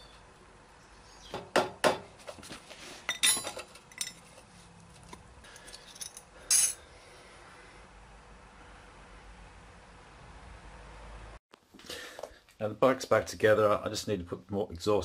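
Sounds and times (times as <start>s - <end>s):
metal tools clinking: 3.1s - 4.5s, 5.5s - 6.8s.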